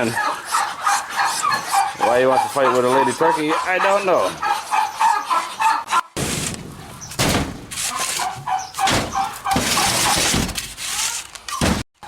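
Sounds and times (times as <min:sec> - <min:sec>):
fowl clucking: 0:00.0 - 0:06.2, 0:07.8 - 0:10.3.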